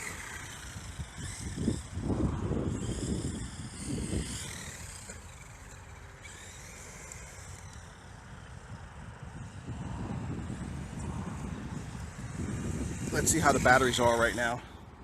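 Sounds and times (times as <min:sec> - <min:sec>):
electric motor whining: 0:00.0 - 0:14.6.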